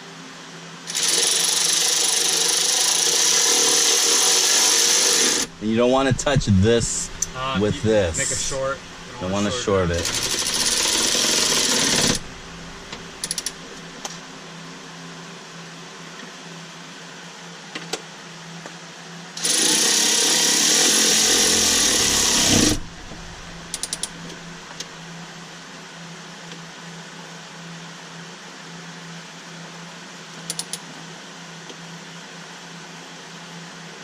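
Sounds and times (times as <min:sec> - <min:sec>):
cordless power tool running: 0:00.9 - 0:13.9, 0:19.4 - 0:24.4
low hum: 0:05.4 - 0:14.0, 0:21.9 - 0:25.1.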